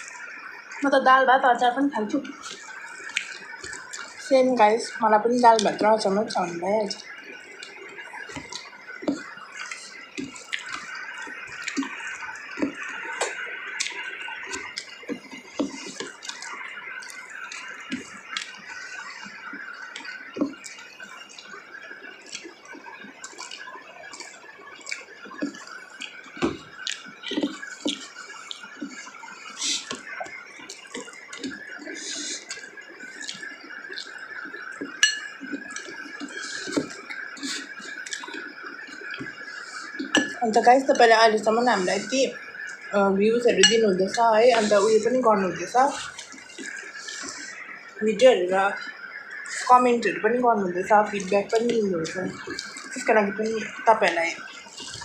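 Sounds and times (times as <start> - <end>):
wet chewing: 1.8 - 55.0
mouth clicks and smacks: 2.1 - 4.3, 5.5 - 40.6, 45.9 - 48.0, 51.1 - 55.0
dishes clinking: 35.0 - 35.6, 40.1 - 40.4.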